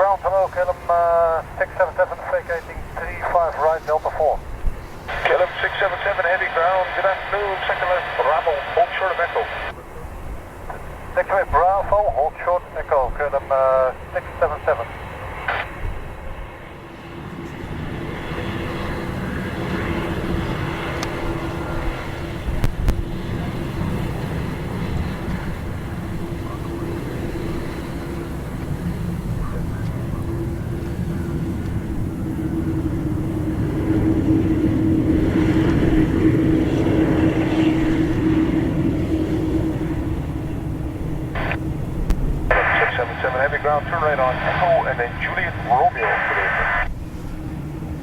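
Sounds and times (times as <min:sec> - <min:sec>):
airliner engines rumbling: 0:00.0 - 0:48.0.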